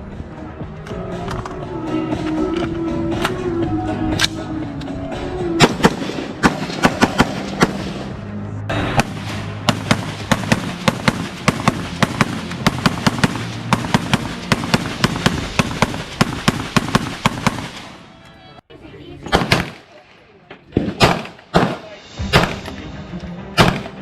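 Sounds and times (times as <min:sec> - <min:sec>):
background music: 0:00.0 - 0:19.2, 0:21.0 - 0:24.0
rapid gunshots: 0:05.6 - 0:08.0, 0:09.0 - 0:18.0, 0:19.3 - 0:19.8, 0:20.8 - 0:22.6, 0:23.6 - 0:24.0.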